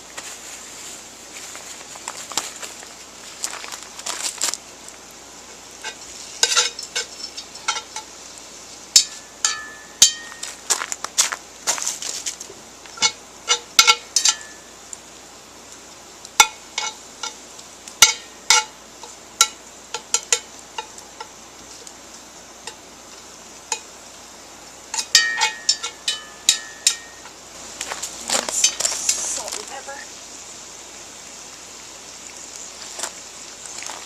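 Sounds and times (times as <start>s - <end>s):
metal utensil clinking on pot: 5.8s - 8.1s, 9.0s - 10.4s, 13.0s - 14.6s, 24.9s - 27.3s.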